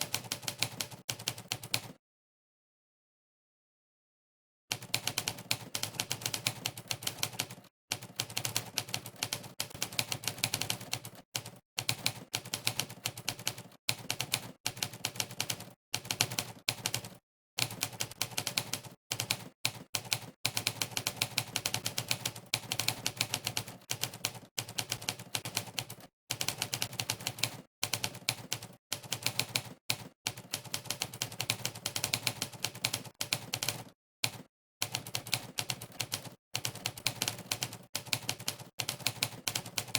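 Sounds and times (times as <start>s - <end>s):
rapid typewriter keystrokes: 0.0s - 2.0s, 4.7s - 39.9s.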